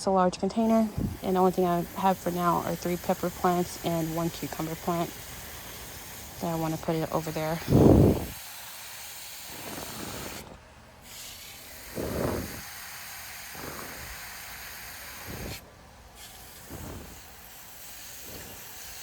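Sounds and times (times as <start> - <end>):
soft low thumps: 0.6 - 1.7, 7.7 - 8.3
water spraying from hose: 0.6 - 19.0.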